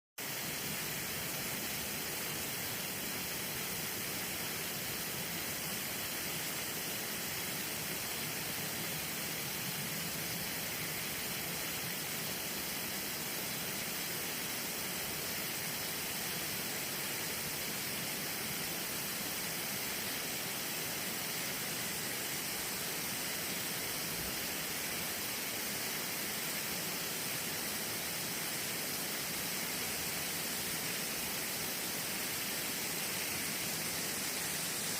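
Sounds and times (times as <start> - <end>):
garden hose spraying water: 0.2 - 34.9.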